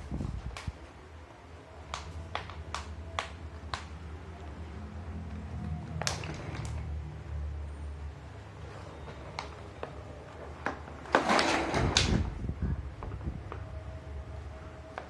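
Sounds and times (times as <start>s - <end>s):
steady low rumble: 11.8s - 14.9s.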